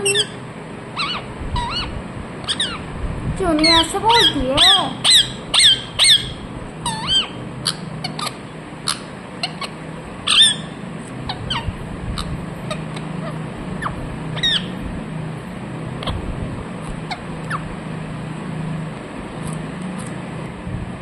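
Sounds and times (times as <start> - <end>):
parrot chirping: 0.0 - 2.9, 3.6 - 14.8, 16.8 - 17.7.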